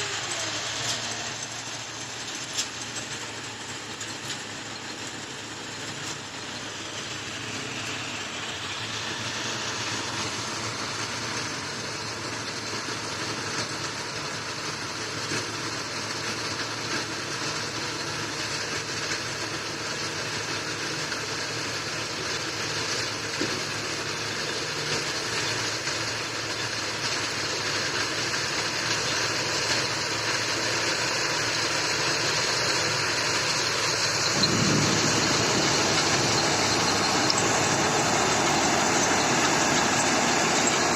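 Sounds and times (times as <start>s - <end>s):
combine harvester running: 0.0s - 40.9s.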